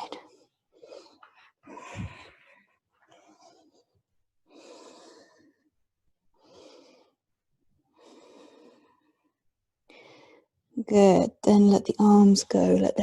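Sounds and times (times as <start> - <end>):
woman breathing: 0.1 - 5.8, 6.4 - 7.2, 7.9 - 10.6.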